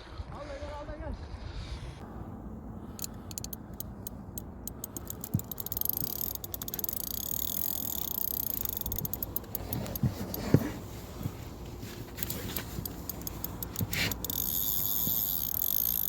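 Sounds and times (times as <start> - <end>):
fishing reel ratchet clicking: 2.9 - 10.4, 12.1 - 16.0.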